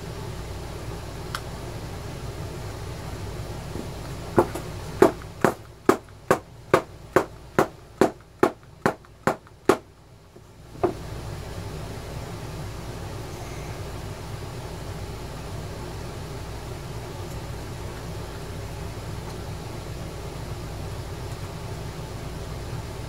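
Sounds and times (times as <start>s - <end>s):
sharp taps on plastic case: 4.4s - 9.8s.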